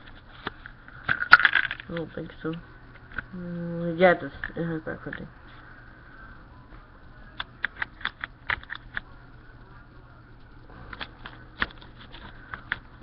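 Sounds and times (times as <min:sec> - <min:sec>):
steady low hum: 0:00.0 - 0:13.0
plastic pieces clicking: 0:00.4 - 0:02.0, 0:07.6 - 0:09.0.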